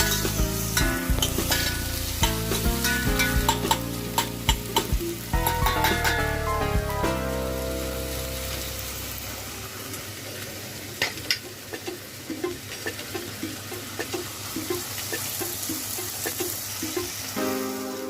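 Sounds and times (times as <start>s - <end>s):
spoon knocking against pan: 0.0s - 6.2s
vegetables sizzling in oil: 0.0s - 18.0s.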